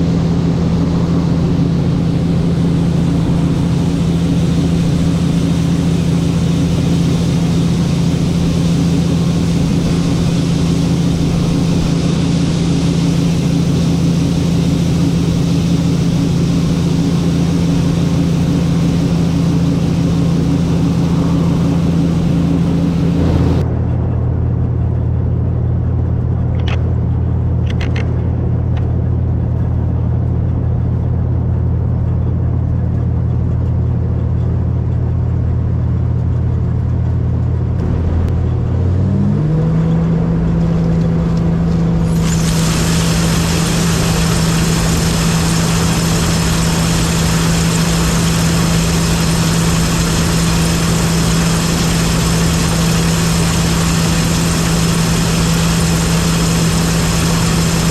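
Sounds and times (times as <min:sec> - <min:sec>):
combine diesel engine running: 0:00.0 - 0:57.9
loud rushing hiss: 0:42.0 - 0:57.9.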